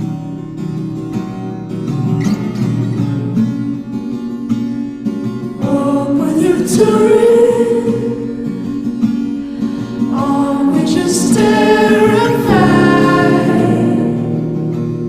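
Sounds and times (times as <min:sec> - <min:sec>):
acoustic guitar strumming: 0:00.0 - 0:15.0
person singing: 0:05.6 - 0:08.5, 0:10.1 - 0:14.3.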